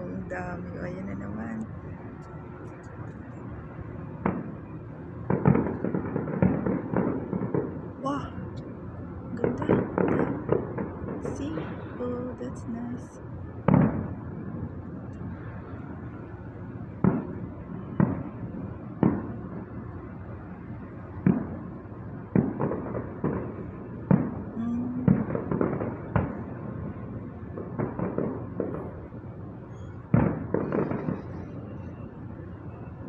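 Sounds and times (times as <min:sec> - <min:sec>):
distant fireworks booming: 0:03.4 - 0:33.0
fireworks crackle: 0:05.3 - 0:08.2, 0:29.8 - 0:31.8.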